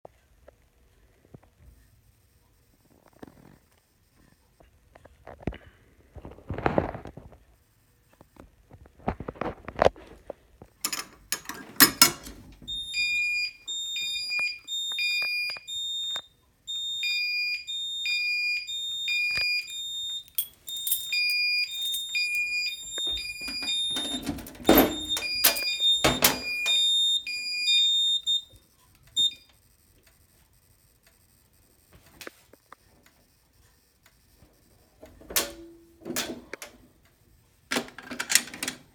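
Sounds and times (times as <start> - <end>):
mechanical clunks and clatter: 10.8 - 12.8, 23.0 - 26.8
fire alarm pulsing tones: 12.5 - 29.5.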